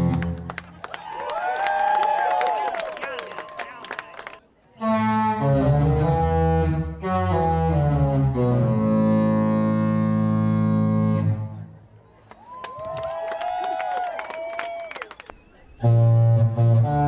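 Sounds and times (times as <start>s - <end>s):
ship horn playing melody: 4.8s - 11.7s, 15.8s - 17.0s.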